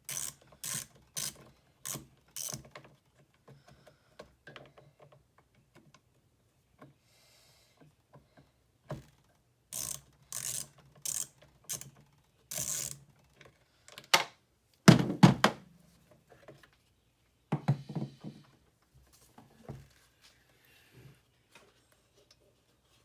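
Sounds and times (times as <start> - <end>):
heavy plastic knocks: 14.9 - 15.7.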